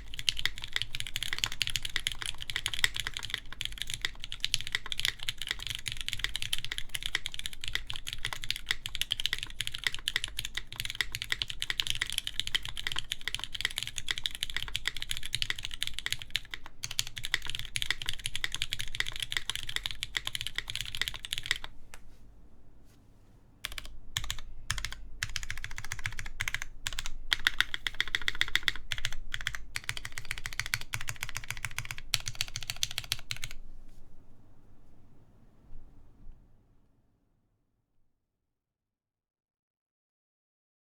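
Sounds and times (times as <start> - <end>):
mechanical keyboard typing: 0.0 - 21.7, 23.6 - 33.6.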